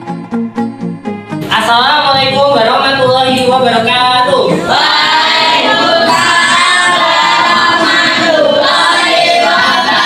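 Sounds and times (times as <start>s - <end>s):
group singing with children: 4.6s - 10.0s.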